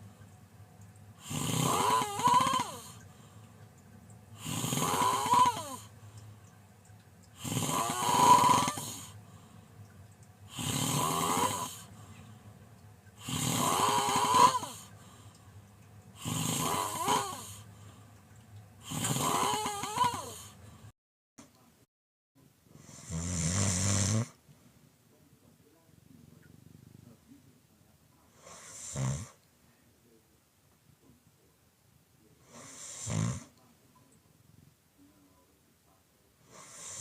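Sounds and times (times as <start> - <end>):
quiet breathing: 0.0 - 21.7, 24.3 - 30.3, 32.2 - 37.0
person snoring loudly: 1.2 - 2.9, 4.4 - 5.9, 7.4 - 9.2, 10.5 - 11.9, 13.2 - 14.9, 16.2 - 17.6, 18.8 - 20.6, 22.9 - 24.3, 28.6 - 29.4, 32.6 - 33.5.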